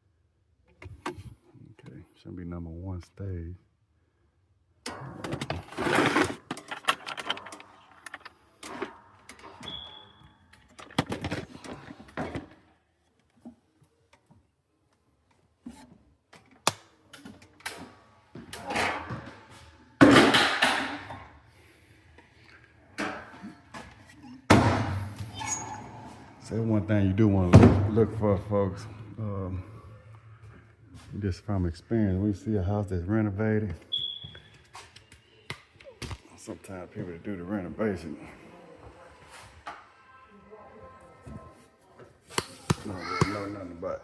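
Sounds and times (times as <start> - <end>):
handling clicks knocks and rustles: 5.4 - 9.4.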